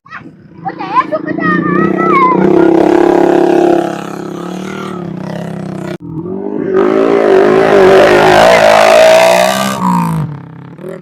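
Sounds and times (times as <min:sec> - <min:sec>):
engine revving: 0:00.7 - 0:11.0
motorcycle engine under load: 0:08.6 - 0:11.0.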